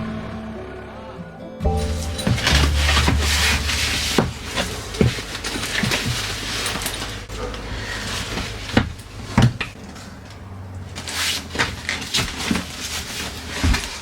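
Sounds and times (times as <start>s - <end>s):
rustling: 1.7s - 14.0s.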